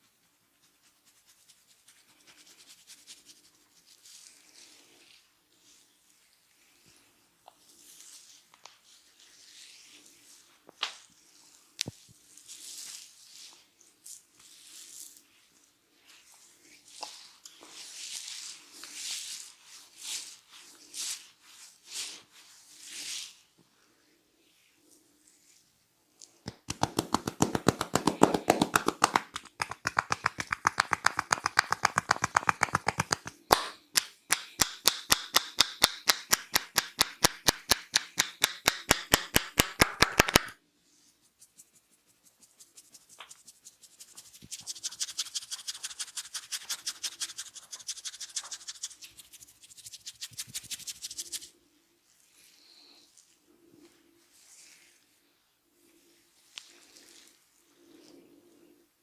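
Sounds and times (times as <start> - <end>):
hands slapping head massage: 26.5 - 40.6, 42.2 - 51.5.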